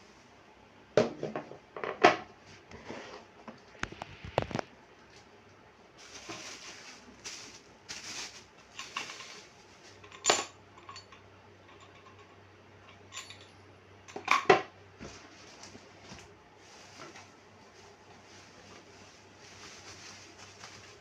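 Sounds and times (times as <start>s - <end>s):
fan parts rustling: 6.0s - 21.0s.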